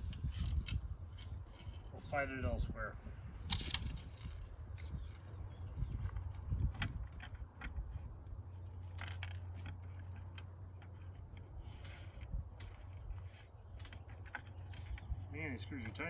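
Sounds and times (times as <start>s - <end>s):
small screws clinking: 3.5s - 5.2s, 6.0s - 16.0s.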